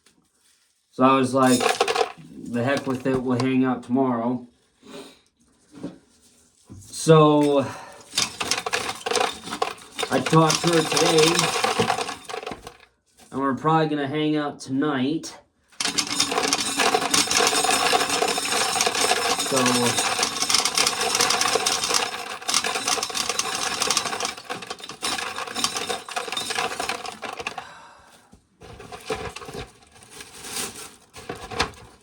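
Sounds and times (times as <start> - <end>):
corn kernels rattling out: 1.2 - 3.4, 7.1 - 12.8, 15.8 - 27.7, 28.6 - 32.0.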